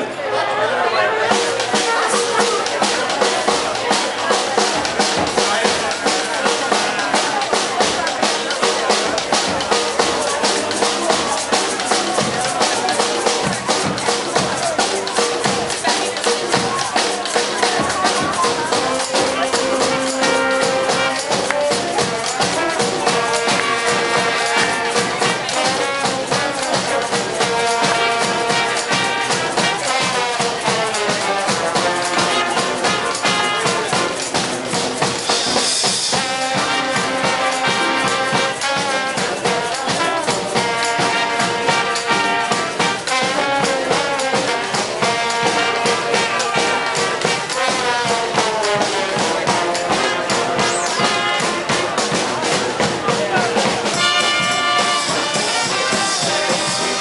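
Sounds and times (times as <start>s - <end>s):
brass band playing: 0.0s - 57.0s
steady drum beat: 1.3s - 57.0s.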